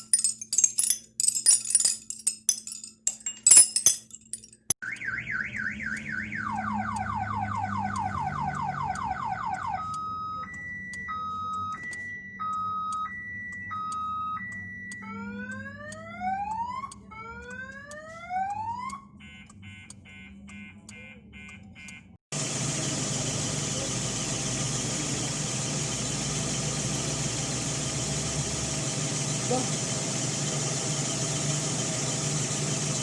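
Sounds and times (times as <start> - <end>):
car alarm siren: 4.8 - 22.2.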